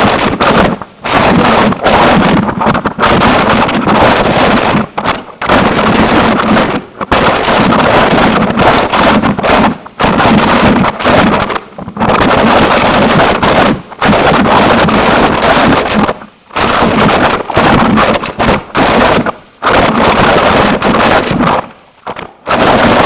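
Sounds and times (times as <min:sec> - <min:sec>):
harsh distorted noise music: 0:00.0 - 0:23.0.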